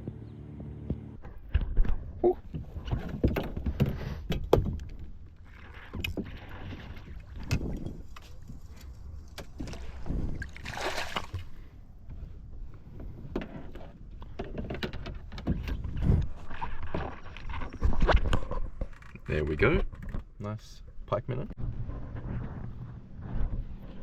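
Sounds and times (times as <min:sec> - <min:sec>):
knocks and clicks from boat: 0:00.8 - 0:20.5
water sloshing and splashing: 0:01.8 - 0:12.3, 0:12.9 - 0:19.3
loud splash: 0:10.5 - 0:11.4.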